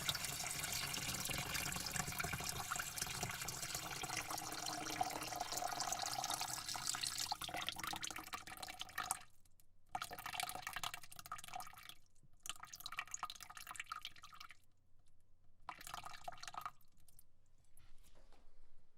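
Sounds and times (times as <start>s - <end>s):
water spraying into bucket: 0.0s - 7.4s.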